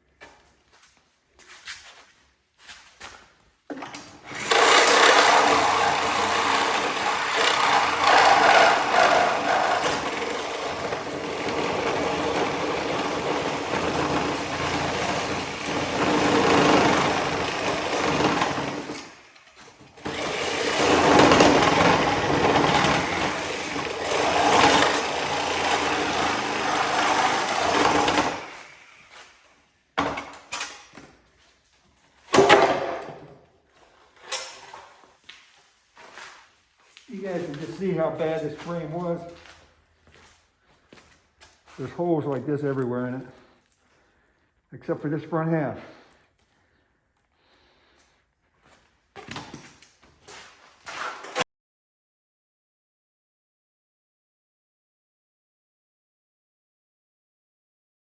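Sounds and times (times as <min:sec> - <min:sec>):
power saw cutting steel: 0:04.2 - 0:30.9, 0:37.1 - 0:39.4.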